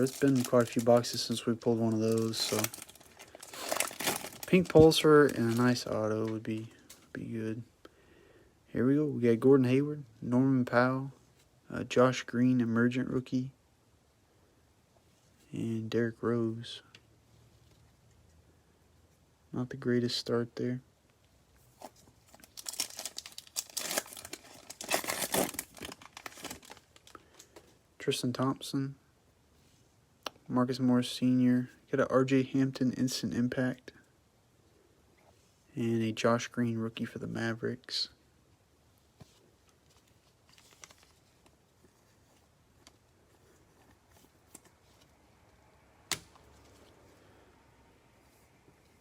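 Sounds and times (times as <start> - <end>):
card pack wrapper tearing: 0.0 - 5.8, 22.3 - 27.2, 40.5 - 41.2.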